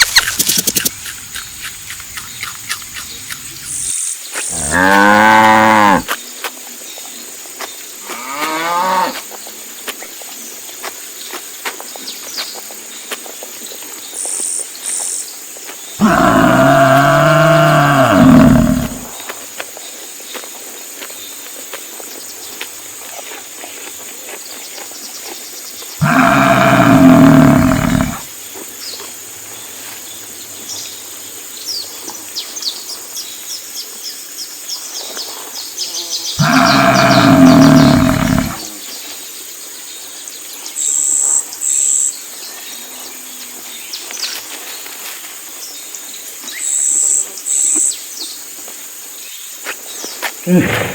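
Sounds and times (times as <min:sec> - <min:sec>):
bird chirps: 0:00.0 - 0:04.9
high insect buzzes: 0:00.0 - 0:06.1, 0:16.0 - 0:19.3, 0:26.0 - 0:28.3, 0:35.9 - 0:38.8
background hiss: 0:00.0 - 0:50.9
loud low animal call: 0:04.5 - 0:06.1, 0:16.0 - 0:19.2, 0:26.0 - 0:28.3, 0:36.4 - 0:38.8
cow mooing: 0:04.6 - 0:06.1, 0:16.0 - 0:19.1, 0:26.0 - 0:28.2, 0:36.4 - 0:38.7.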